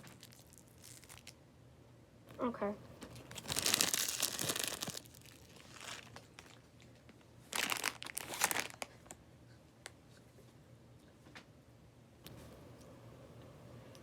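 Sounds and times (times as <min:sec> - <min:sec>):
packaging crinkling: 0:00.0 - 0:01.4, 0:03.1 - 0:06.7, 0:07.4 - 0:09.2.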